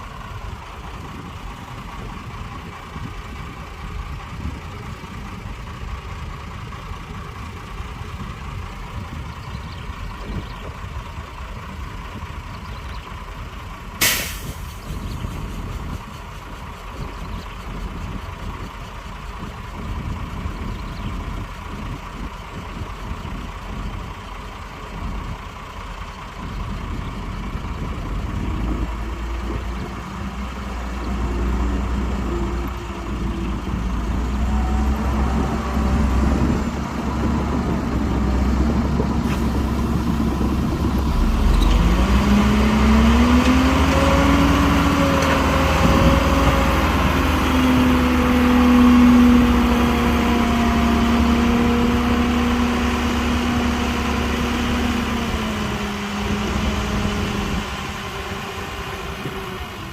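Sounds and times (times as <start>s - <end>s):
diesel truck engine running: 0.0s - 59.9s
air brake hiss: 14.0s - 14.8s.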